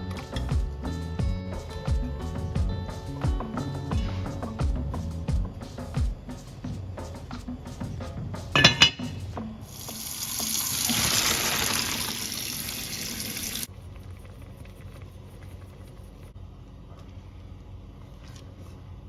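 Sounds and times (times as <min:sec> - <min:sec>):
tap water running into sink: 0:09.7 - 0:13.7.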